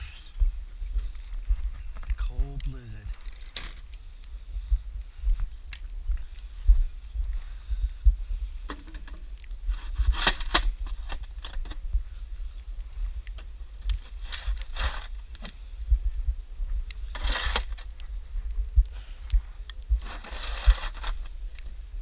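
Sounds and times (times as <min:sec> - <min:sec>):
scraping crunches in snow: 0:20.0 - 0:21.3.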